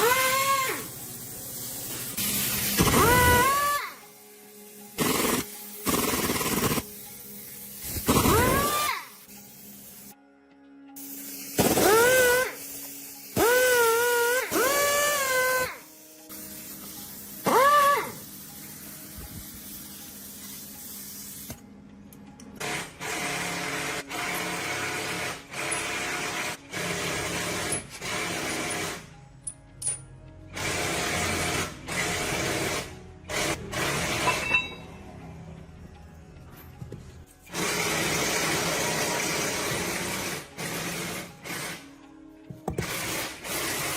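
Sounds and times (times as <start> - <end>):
pneumatic power tool whine: 0.0 - 0.9, 2.2 - 4.0, 5.0 - 6.9, 7.8 - 9.1, 11.6 - 15.8, 17.4 - 18.2.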